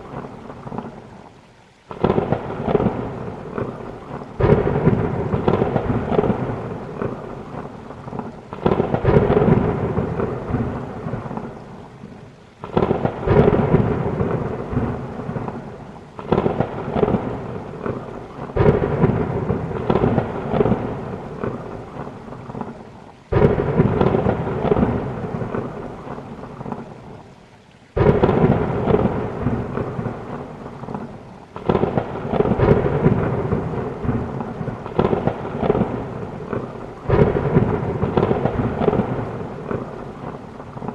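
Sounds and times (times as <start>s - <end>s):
heavy rain falling: 0.0s - 40.9s
rolling thunder: 1.9s - 11.8s, 12.6s - 27.2s, 28.0s - 40.9s.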